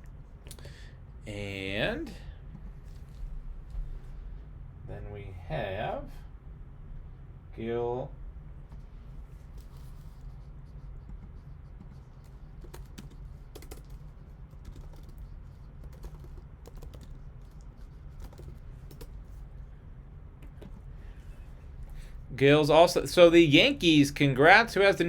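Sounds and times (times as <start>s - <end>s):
low steady hum: 0.0s - 25.0s
typing on computer keyboard: 11.0s - 19.4s.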